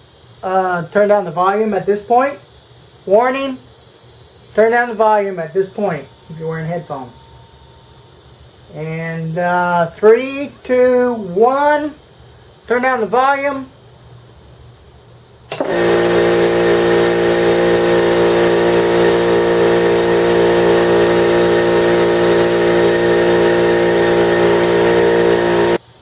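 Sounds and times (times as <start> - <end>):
air compressor running loudly: 15.5 - 26.0.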